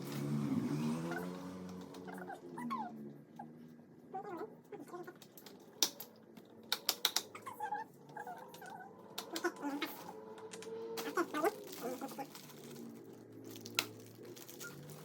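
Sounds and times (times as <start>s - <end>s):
sharp plastic clicks and snaps: 1.6s - 2.1s, 5.0s - 7.4s, 8.4s - 11.1s, 13.5s - 14.2s.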